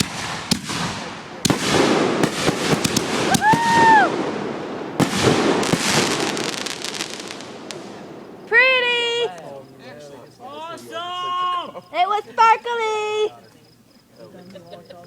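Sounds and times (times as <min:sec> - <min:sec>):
firework pops: 0:00.0 - 0:04.0
firework bangs: 0:00.0 - 0:09.3
firework crackling: 0:00.0 - 0:09.3.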